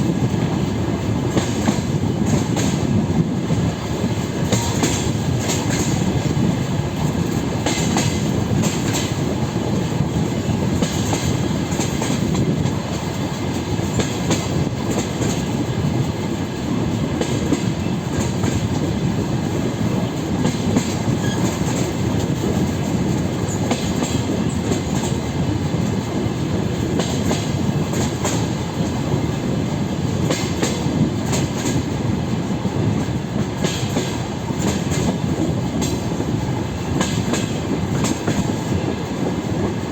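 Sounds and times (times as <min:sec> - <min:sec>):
train running gear rumble: 0:00.0 - 0:39.9
wheels clicking over rail joints: 0:19.9 - 0:26.0.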